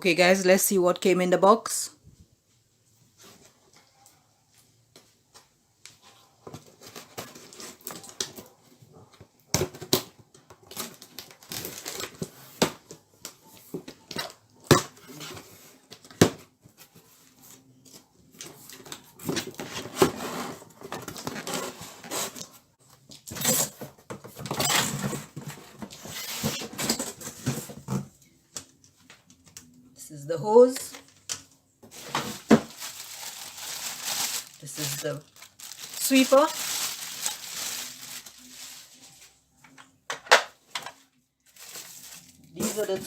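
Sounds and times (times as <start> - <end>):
cardboard packaging handling: 31.9 - 39.3, 41.5 - 43.0.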